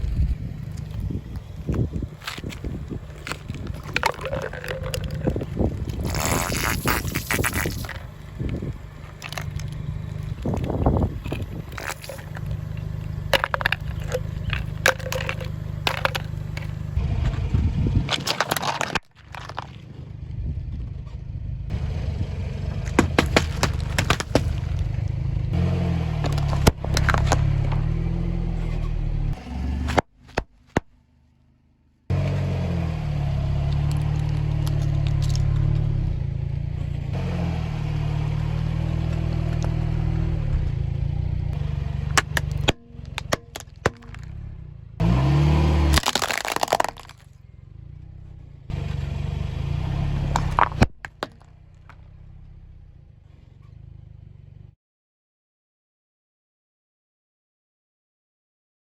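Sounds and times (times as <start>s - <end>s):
car engine running slowly: 0.0s - 54.8s
tyres crushing objects: 0.7s - 17.0s, 18.1s - 19.9s, 22.8s - 25.2s, 26.1s - 28.0s, 29.4s - 31.0s, 33.8s - 35.8s, 38.9s - 39.9s, 41.6s - 44.4s, 45.0s - 47.3s, 50.2s - 52.0s.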